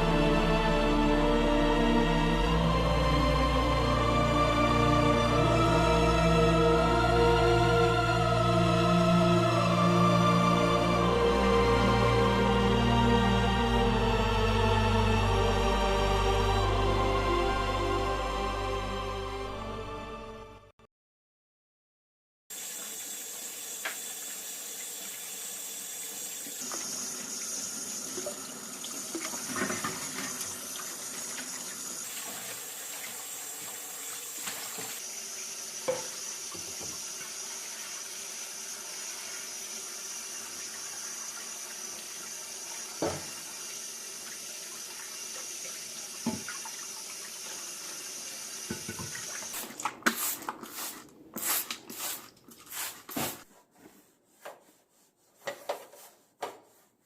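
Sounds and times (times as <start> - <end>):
tap water running into sink: 22.5 - 53.3.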